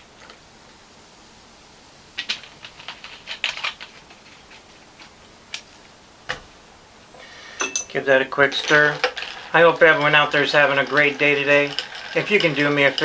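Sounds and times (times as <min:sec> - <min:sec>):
light clicks and clinks of glass: 0:07.6 - 0:08.0.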